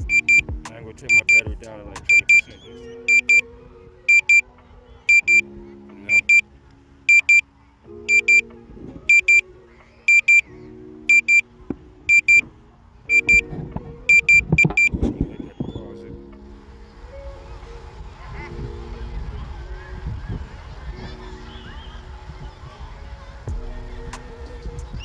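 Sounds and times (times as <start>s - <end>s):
remote controller warning beeps: 0.0s - 0.5s, 1.1s - 1.5s, 2.1s - 2.5s, 3.1s - 3.4s, 4.1s - 4.4s, 5.1s - 5.4s, 6.1s - 6.4s, 7.1s - 7.4s, 8.1s - 8.4s, 9.1s - 9.4s, 10.1s - 10.4s, 11.1s - 11.4s, 12.1s - 12.4s, 13.1s - 13.4s, 14.1s - 15.0s.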